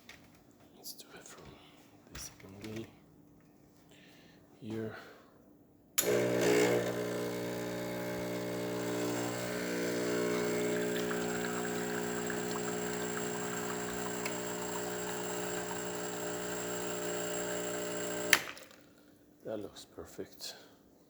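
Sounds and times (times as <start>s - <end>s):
espresso machine pump humming: 6.0s - 18.5s
espresso pouring into cup: 6.0s - 18.5s.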